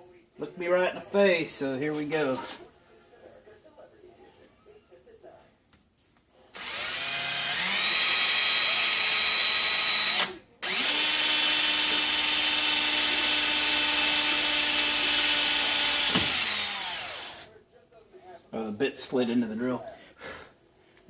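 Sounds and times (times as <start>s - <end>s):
power drill boring into ball: 6.6s - 17.5s.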